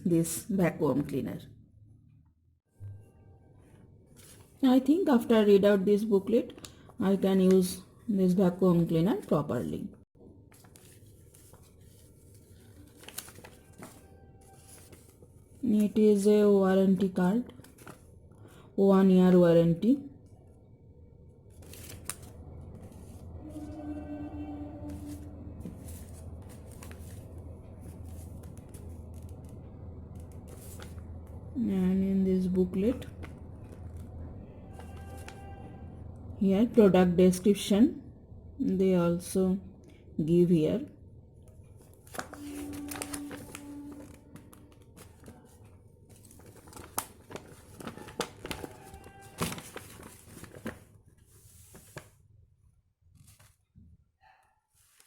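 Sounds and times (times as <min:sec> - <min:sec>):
paper rustling: 0:04.1 - 0:04.6, 0:10.4 - 0:16.2, 0:16.8 - 0:18.6, 0:21.5 - 0:23.8, 0:24.9 - 0:31.4, 0:34.7 - 0:35.7, 0:41.6 - 0:52.3, 0:53.1 - 0:53.7
steady low hum: 0:20.8 - 0:34.8.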